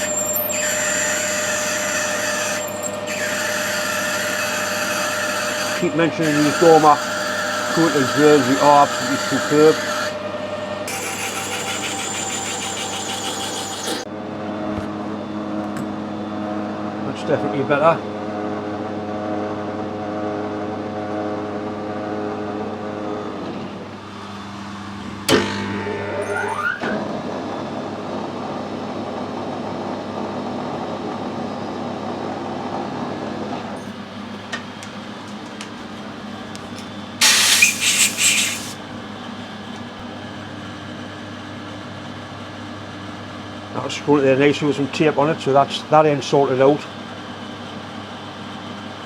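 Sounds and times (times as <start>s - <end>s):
metal lathe humming: 0.0s - 14.1s, 37.2s - 38.8s
lathe whine spinning up: 0.0s - 15.5s
loud hissing burst: 37.2s - 38.8s.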